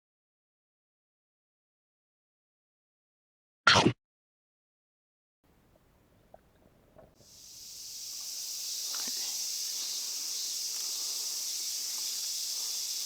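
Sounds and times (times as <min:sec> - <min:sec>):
high-pitched insect chorus: 0:07.2 - 0:13.0.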